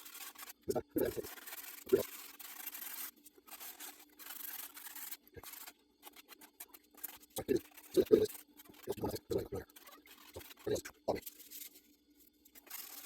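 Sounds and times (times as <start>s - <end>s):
sandpaper rasping on wood: 0.0s - 9.1s.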